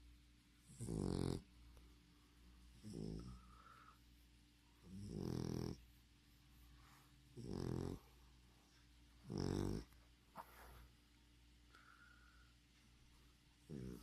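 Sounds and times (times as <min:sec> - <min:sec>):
dog snoring: 0:00.6 - 0:01.5, 0:02.8 - 0:04.0, 0:04.8 - 0:05.8, 0:07.3 - 0:08.1, 0:09.2 - 0:10.0, 0:13.6 - 0:14.0.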